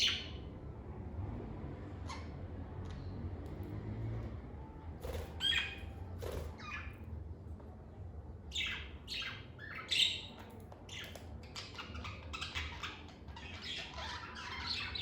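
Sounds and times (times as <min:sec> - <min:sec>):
lovebirds chirping: 0:05.3 - 0:07.0, 0:08.5 - 0:15.0.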